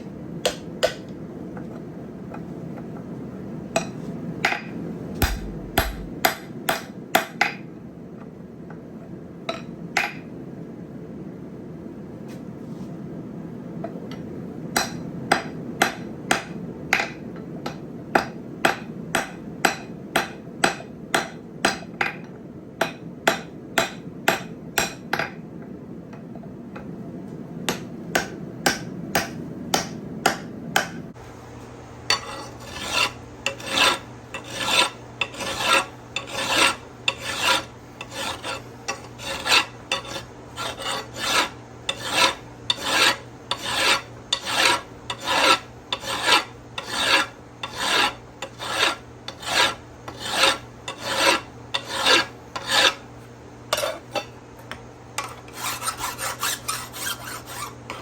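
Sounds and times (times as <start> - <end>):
low steady hum: 0.0 - 6.6
hand file on steel: 5.2 - 6.1, 32.1 - 53.0, 55.5 - 58.0.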